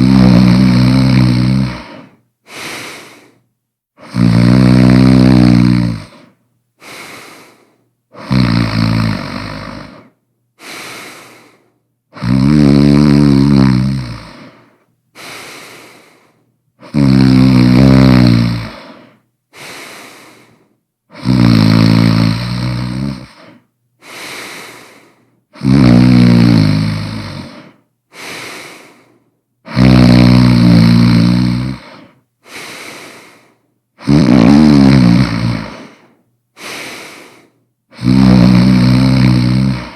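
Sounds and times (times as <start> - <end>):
person snoring: 0.0 - 3.4, 4.0 - 39.9
breathing out: 1.7 - 4.2, 9.9 - 11.8, 14.2 - 17.0, 18.7 - 21.4, 23.2 - 25.7, 27.4 - 29.3, 31.8 - 33.6, 35.6 - 38.8.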